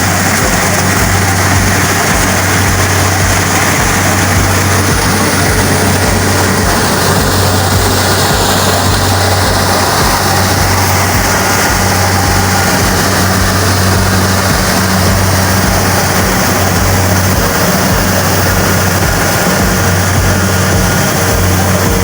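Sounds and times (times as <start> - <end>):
harvester engine hum: 0.0 - 22.0
mechanical rush: 0.0 - 22.0.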